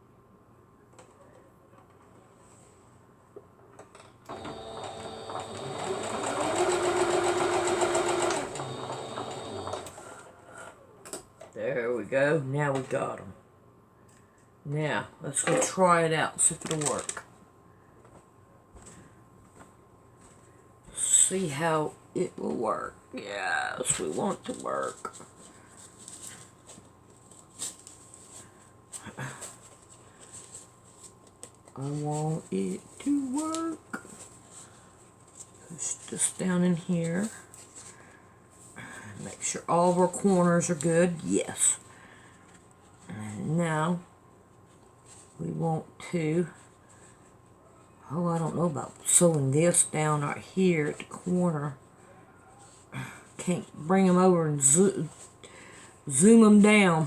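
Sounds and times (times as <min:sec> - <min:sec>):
sewing machine humming: 0:04.3 - 0:10.1.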